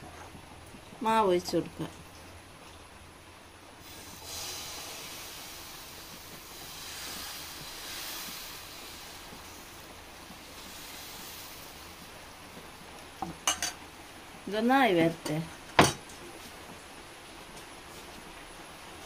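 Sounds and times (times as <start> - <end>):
batter sizzling on a pan: 3.8 - 14.0.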